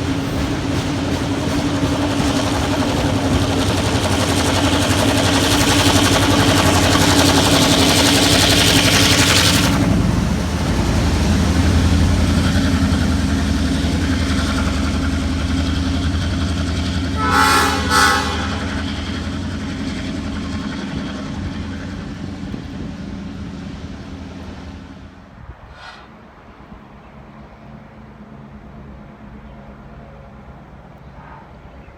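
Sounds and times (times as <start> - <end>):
train passing: 0.0 - 31.9
train whistle toots: 17.1 - 19.0.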